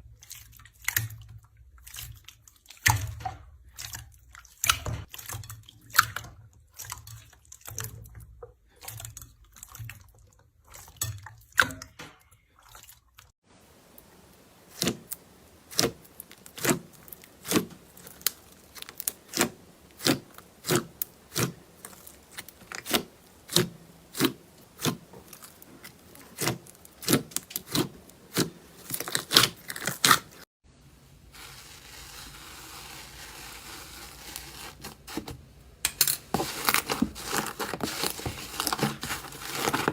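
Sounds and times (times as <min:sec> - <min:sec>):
faint steady hiss: 0:13.4 - 0:29.0, 0:30.7 - 0:39.9
squishy slime handling: 0:13.8 - 0:30.4, 0:31.3 - 0:39.9.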